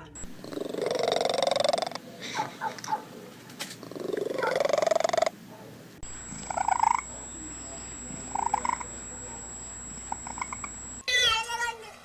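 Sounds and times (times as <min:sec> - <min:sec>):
cat rough pulsing call: 0:03.8 - 0:05.4.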